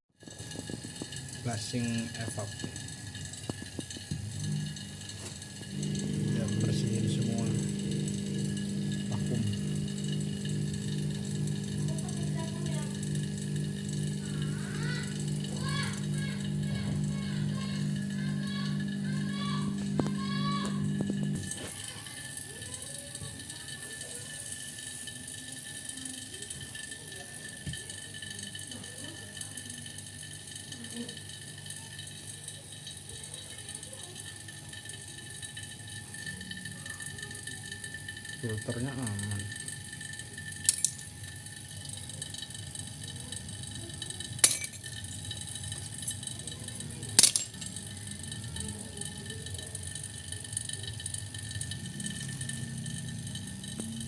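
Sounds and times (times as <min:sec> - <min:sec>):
vacuum pump droning: 0:00.2 - 0:54.0
low background hum: 0:00.3 - 0:24.5, 0:27.1 - 0:54.0
metallic clink: 0:40.6 - 0:41.0, 0:44.4 - 0:45.0, 0:47.2 - 0:47.8.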